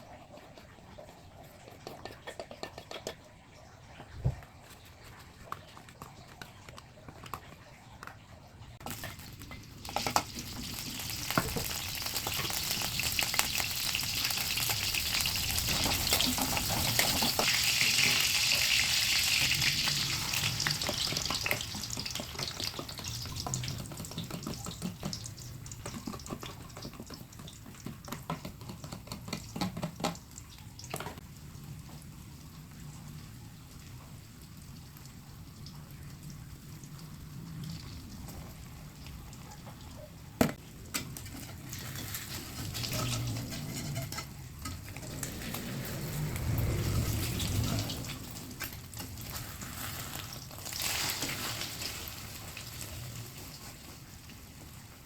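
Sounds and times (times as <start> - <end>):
omelette sizzling in a pan: 8.8 - 27.8, 41.2 - 55.0.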